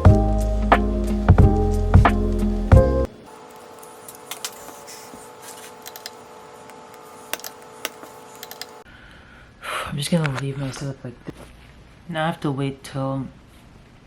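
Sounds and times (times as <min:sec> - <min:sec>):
background music: 0:00.0 - 0:03.1.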